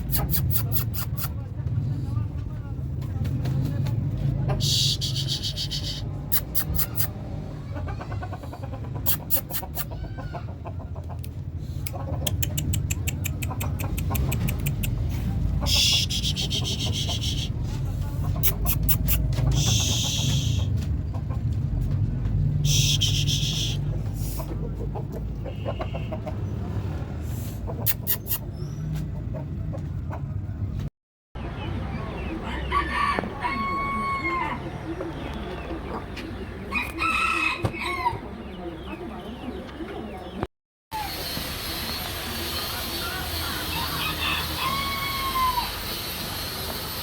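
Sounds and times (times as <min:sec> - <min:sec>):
roosters flapping wings and scuffling: 0:02.8 - 0:04.4.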